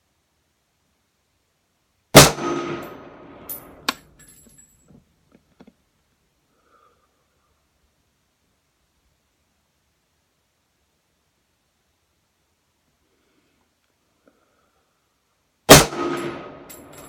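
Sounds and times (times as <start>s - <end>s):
rifle shot with echo: 2.2s - 3.5s, 15.7s - 17.0s
ringing metallic clinks: 3.5s - 5.0s, 16.2s - 17.0s.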